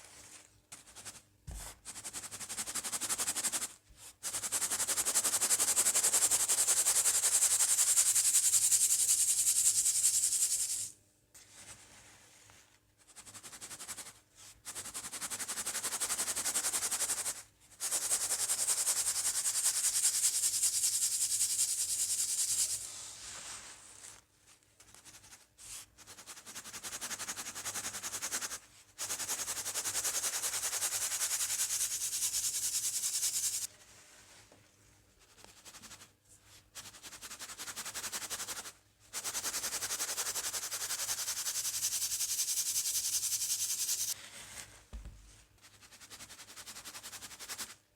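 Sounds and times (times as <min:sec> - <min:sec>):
powder sifting through a sieve: 0:05.3 - 0:12.6, 0:17.9 - 0:24.2, 0:29.1 - 0:34.4, 0:39.2 - 0:44.8.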